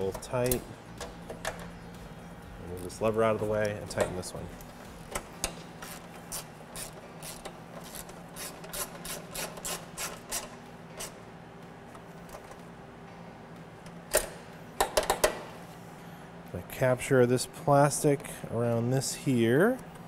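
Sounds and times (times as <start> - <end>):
ratchet clicking: 5.0 - 11.2.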